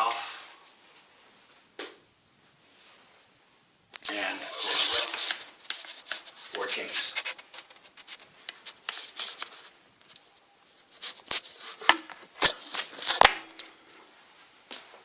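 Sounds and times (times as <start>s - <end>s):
playing cards rustling and riffling: 4.0s - 14.0s
cards tapping sharply: 11.0s - 13.8s.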